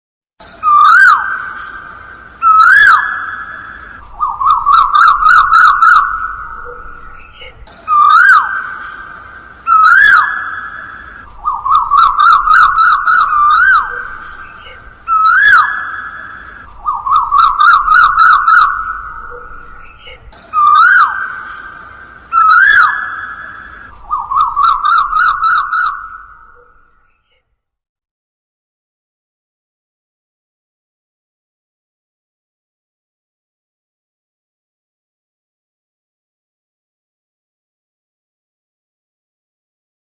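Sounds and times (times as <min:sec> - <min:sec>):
koel calling with swooping whistles: 0:00.5 - 0:27.4.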